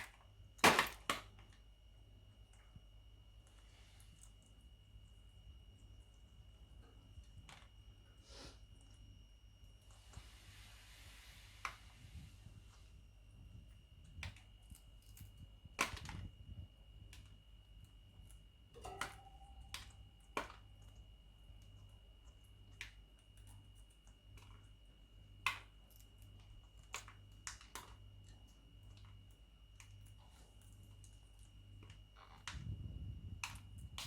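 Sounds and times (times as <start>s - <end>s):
faint steady hum: 0.0s - 34.0s
thin high whine: 17.7s - 20.3s.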